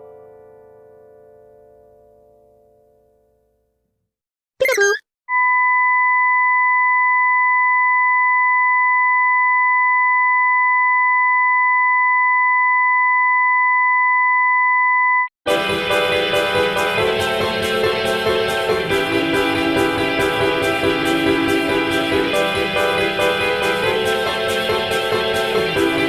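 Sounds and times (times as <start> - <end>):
steady electronic beep: 4.6 - 5.0
warbling electronic sound effect: 4.6 - 5.0
loud music: 15.5 - 26.0.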